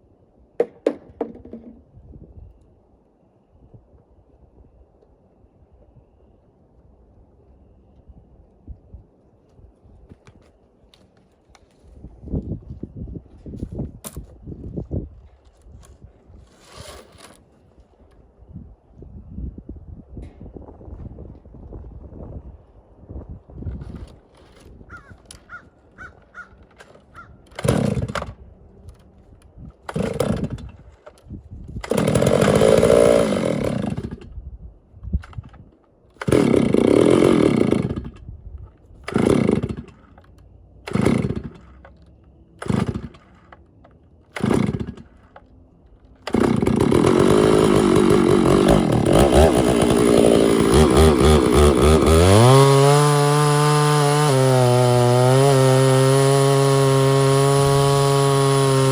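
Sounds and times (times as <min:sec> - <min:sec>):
chainsaw engine revving: 0:27.5 - 0:28.3, 0:29.9 - 0:30.7, 0:31.8 - 0:34.3, 0:36.2 - 0:38.2, 0:39.1 - 0:40.1, 0:40.9 - 0:41.9, 0:42.6 - 0:43.5, 0:44.3 - 0:45.4, 0:46.2 - 0:58.9.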